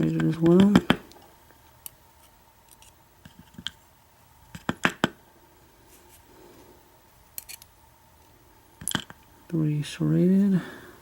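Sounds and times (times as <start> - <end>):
small metal pins clicking: 7.4 - 7.7.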